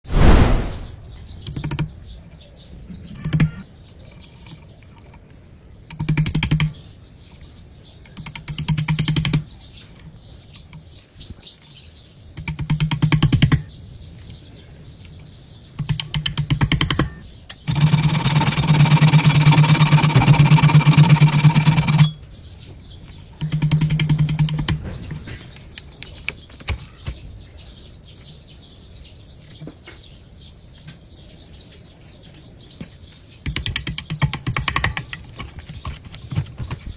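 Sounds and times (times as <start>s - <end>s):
electric power tool running: 17.7s - 22.1s.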